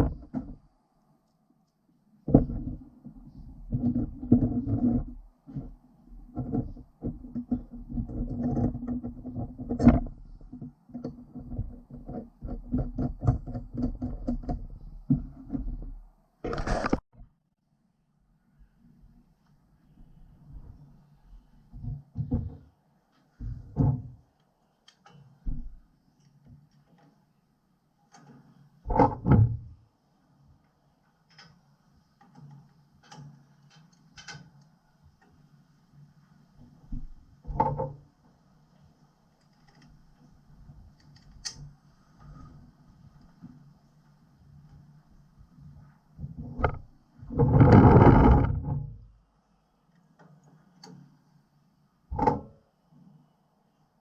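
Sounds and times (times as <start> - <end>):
metal parts clicking and tapping: 32.2 - 34.8.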